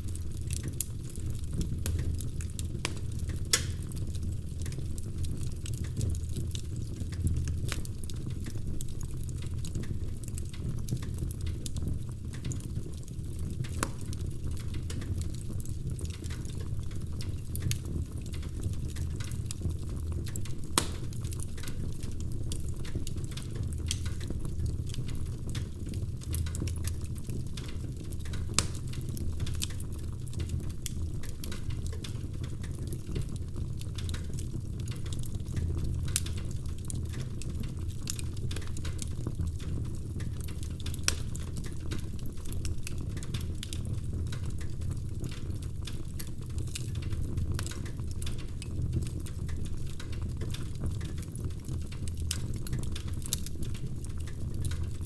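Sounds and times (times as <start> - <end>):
fire crackling and popping: 0.0 - 55.0
fire rumbling: 0.0 - 55.0.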